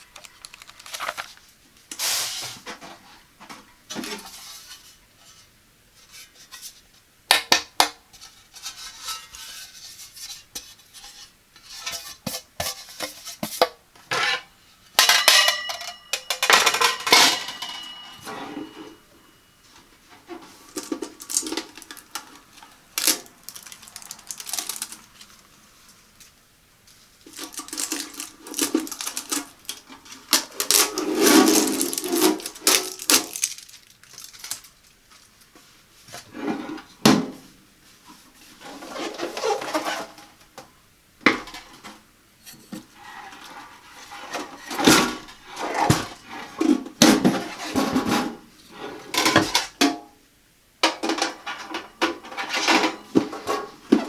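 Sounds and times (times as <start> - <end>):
packaging rustling: 0.0 - 1.5, 20.5 - 35.5
metal clinks and clatter: 27.3 - 29.8, 30.4 - 34.8.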